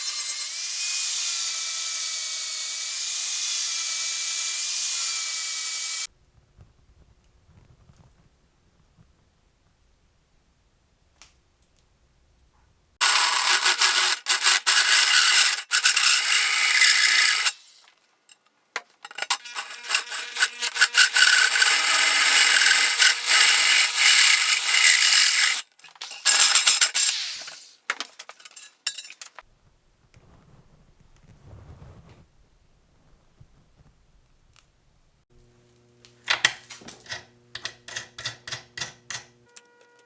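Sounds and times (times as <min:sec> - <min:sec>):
tool rasping and scraping material: 0:13.0 - 0:18.0, 0:19.0 - 0:29.4.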